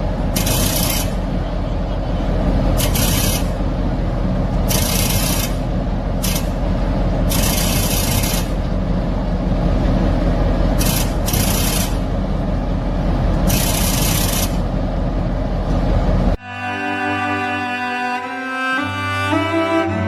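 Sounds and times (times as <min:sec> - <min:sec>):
train rumbling: 0:00.0 - 0:20.0
slow cello music: 0:16.4 - 0:20.0.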